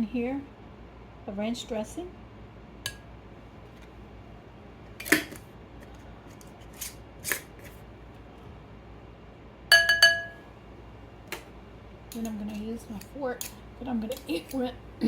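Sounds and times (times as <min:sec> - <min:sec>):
spoon clicking on bowl: 0:09.7 - 0:10.4
spoon tapping bowl ringing: 0:09.7 - 0:10.5.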